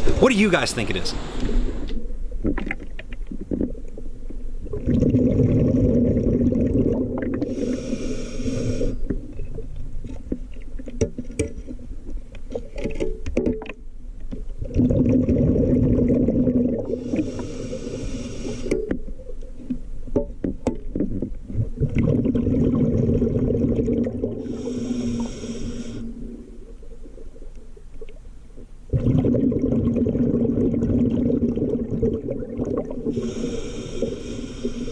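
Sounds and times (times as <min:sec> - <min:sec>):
regulator exhalation bubbles: 0:04.7 - 0:09.2, 0:28.9 - 0:34.9.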